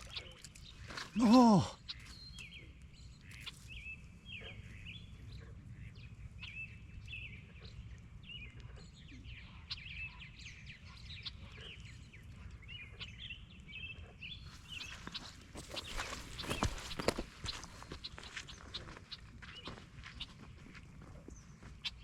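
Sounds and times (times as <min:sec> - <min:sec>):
birds chirping and whistling: 0:14.4 - 0:19.0.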